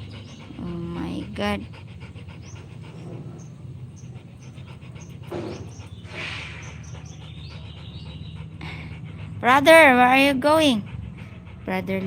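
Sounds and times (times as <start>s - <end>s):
dog panting: 0.0s - 12.0s.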